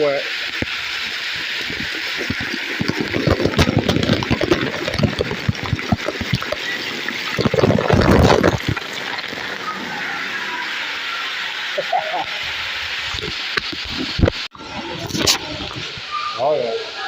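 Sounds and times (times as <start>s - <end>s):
heavy water drops splattering: 0.0s - 12.4s
flowing water rushing: 0.0s - 17.0s
water gushing: 0.0s - 17.0s.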